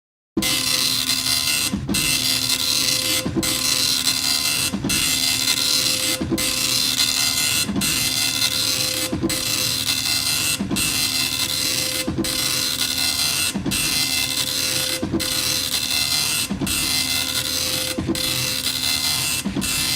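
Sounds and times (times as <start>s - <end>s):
dot matrix printer buzzing: 0.4s - 19.9s
printer line-end thump: 4.6s - 9.7s, 19.3s - 19.9s.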